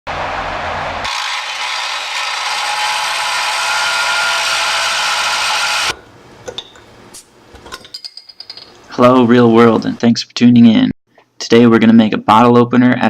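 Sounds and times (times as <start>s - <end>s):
angle grinder cutting steel: 1.0s - 6.0s.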